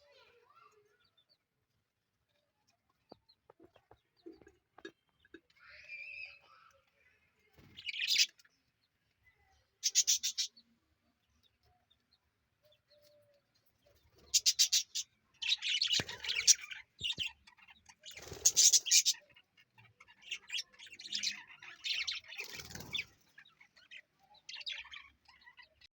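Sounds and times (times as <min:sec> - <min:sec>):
budgerigars chirping: 0:07.8 - 0:08.4, 0:09.8 - 0:10.6, 0:14.1 - 0:25.9.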